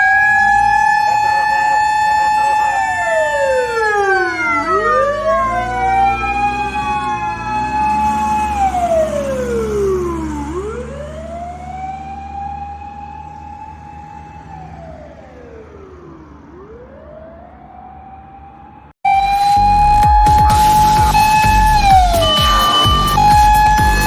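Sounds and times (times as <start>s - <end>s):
fire engine siren wailing: 0.0s - 24.0s
low engine drone: 14.5s - 24.0s.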